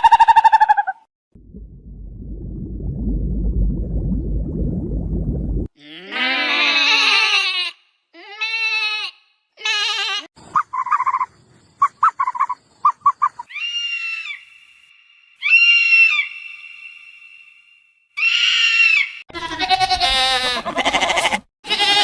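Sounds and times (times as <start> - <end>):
animal bleating: 5.8 - 10.3, 18.2 - 22.0.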